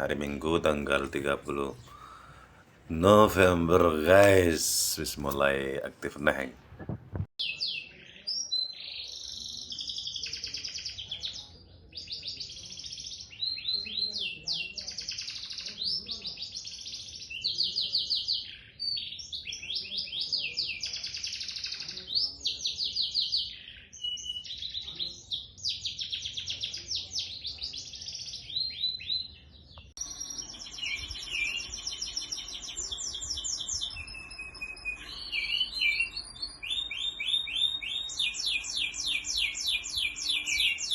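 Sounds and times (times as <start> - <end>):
songbird chirping trills: 22.8 - 40.9.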